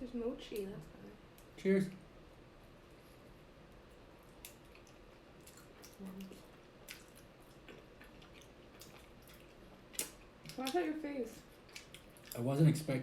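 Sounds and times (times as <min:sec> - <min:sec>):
wet chewing mouth sounds: 0:04.2 - 0:12.5.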